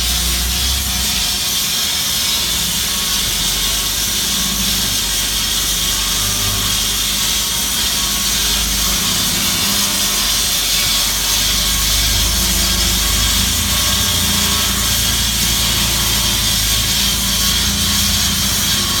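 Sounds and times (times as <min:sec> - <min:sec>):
metal-cutting band saw running: 0:00.0 - 0:19.0.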